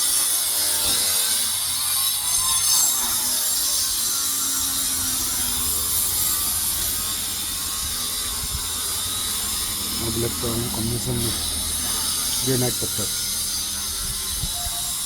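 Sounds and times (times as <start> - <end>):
high-pitched rasping mechanical noise: 0.0 - 15.0.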